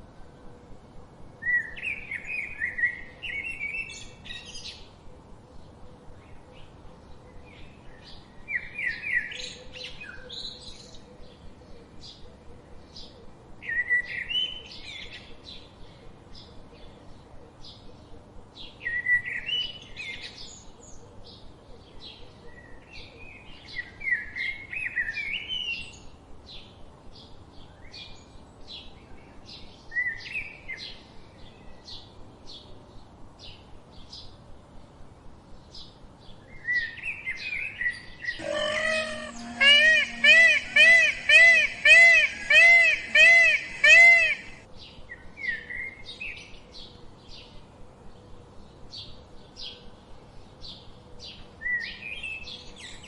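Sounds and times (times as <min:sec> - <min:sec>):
small birds chirping: 0:35.7 - 0:44.9
bird warbling phrases: 0:38.4 - 0:44.6.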